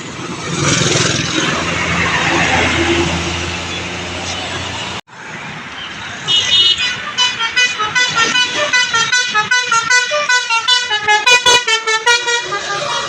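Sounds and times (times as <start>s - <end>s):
multi-tone bus horn melody: 6.2s - 13.0s.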